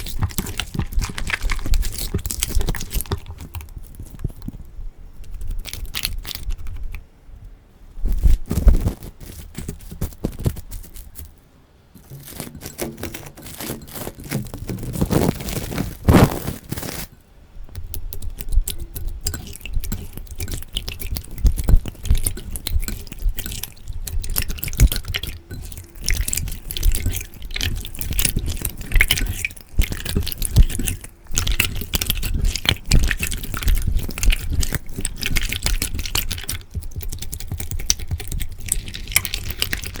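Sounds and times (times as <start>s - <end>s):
slime squelching and popping: 0.0s - 4.6s, 17.8s - 40.0s.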